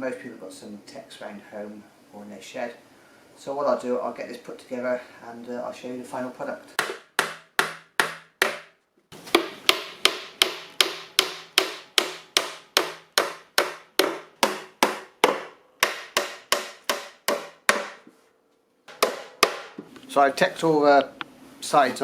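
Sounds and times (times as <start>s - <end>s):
hammer tapping tacks into wood: 6.8s - 8.7s, 9.3s - 18.0s, 18.9s - 19.8s.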